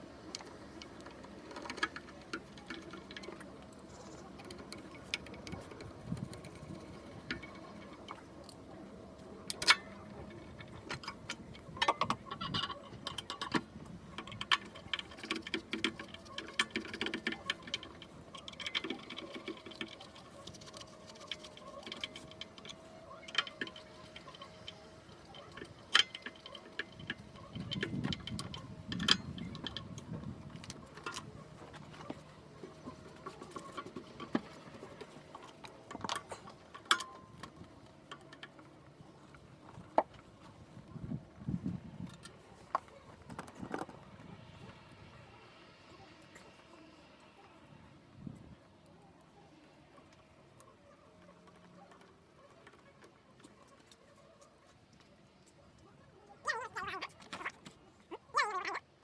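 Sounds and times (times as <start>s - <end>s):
tools clicking and tapping: 9.4s - 40.3s.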